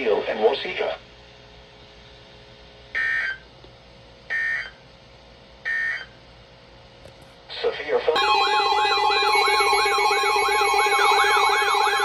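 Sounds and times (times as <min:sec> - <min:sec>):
warbling two-tone data bursts: 0:08.2 - 0:12.0.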